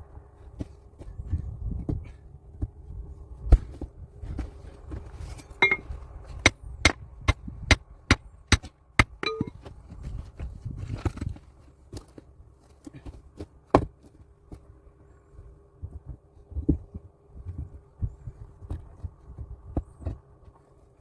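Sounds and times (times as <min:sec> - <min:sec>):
hammering on stone: 0:05.6 - 0:05.8, 0:06.4 - 0:09.6.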